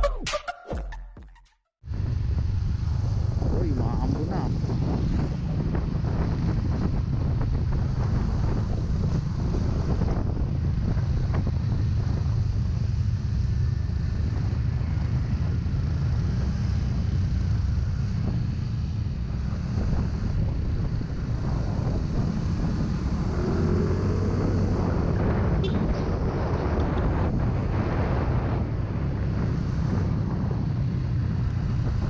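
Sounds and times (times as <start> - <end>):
wind buffeting microphone: 1.9 - 32.0.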